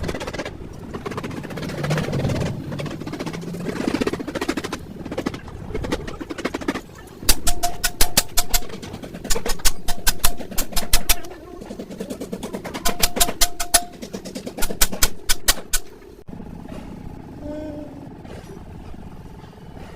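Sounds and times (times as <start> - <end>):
low steady hum: 0.0 - 19.9.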